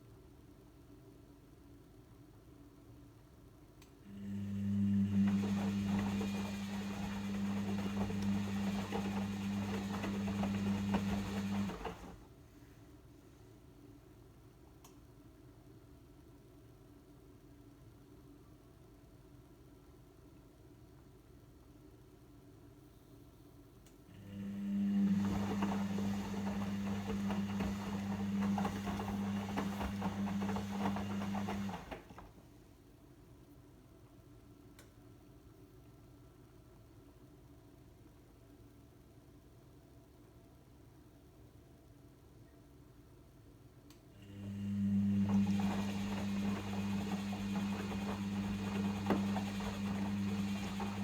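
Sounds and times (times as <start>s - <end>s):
washing machine humming: 4.1s - 12.4s, 24.1s - 32.6s, 44.2s - 51.0s.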